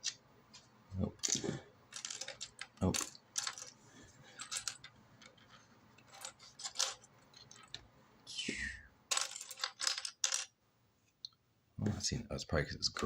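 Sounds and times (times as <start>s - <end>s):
plastic bricks clicking and clattering: 1.2s - 3.8s, 4.4s - 7.8s, 9.1s - 10.5s.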